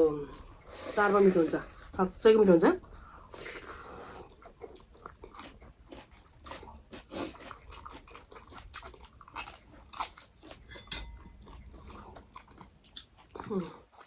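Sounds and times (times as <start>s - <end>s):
person chewing and crunching: 3.3s - 14.0s.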